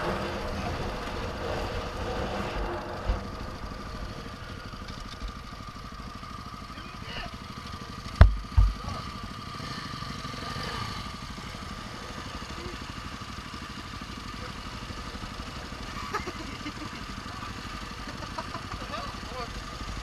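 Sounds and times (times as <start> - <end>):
vehicle engine running: 0.0 - 20.0
heavy thumps: 8.2 - 8.8.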